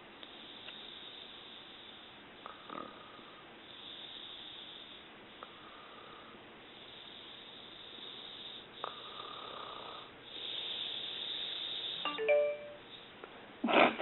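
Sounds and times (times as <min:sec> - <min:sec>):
woman snoring: 0:02.4 - 0:03.2, 0:08.1 - 0:12.0
squeaky snort: 0:02.5 - 0:03.0, 0:13.6 - 0:14.0.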